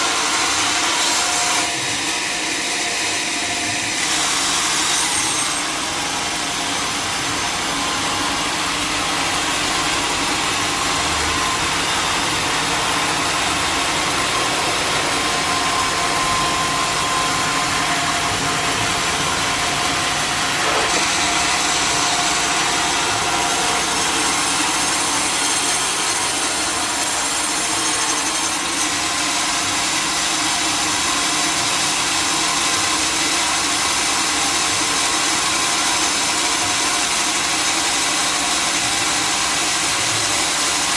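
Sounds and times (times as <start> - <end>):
mill machinery running: 0.0 - 40.9
saw cutting wood: 0.0 - 40.9.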